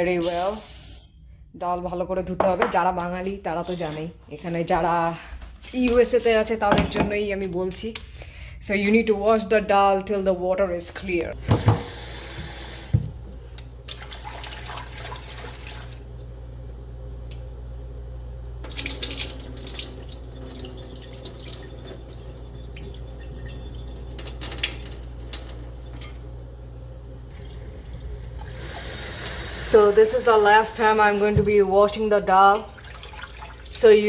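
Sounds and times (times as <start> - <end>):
kitchen tap running: 11.4 - 16.2, 18.6 - 34.0
water sloshing and splashing: 13.8 - 16.0, 18.6 - 26.7, 31.4 - 34.0
steady low hum: 21.6 - 32.8.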